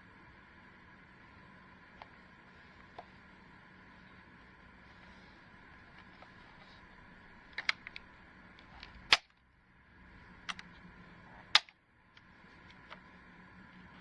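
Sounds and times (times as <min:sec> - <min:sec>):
faint steady hum: 0:00.0 - 0:14.0
sharp clicks: 0:11.6 - 0:12.3.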